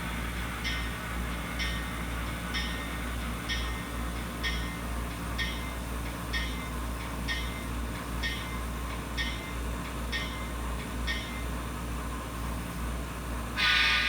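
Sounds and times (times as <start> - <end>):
locomotive bell ringing: 1.6 - 11.6.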